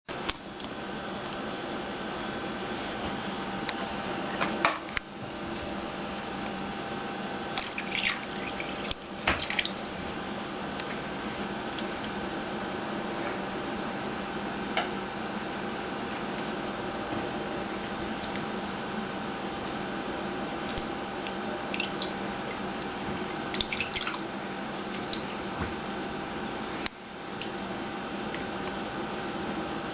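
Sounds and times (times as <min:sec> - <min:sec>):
low room hum: 0:00.1 - 0:29.9
kitten splashing water in bowl: 0:07.5 - 0:09.8, 0:23.5 - 0:24.2.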